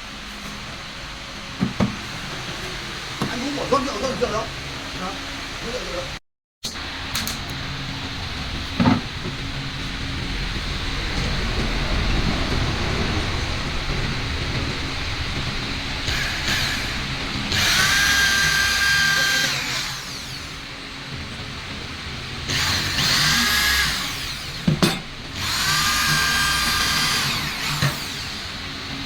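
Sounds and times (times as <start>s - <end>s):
electric drill motor whine: 16.0s - 20.8s, 22.5s - 24.8s, 25.4s - 29.0s.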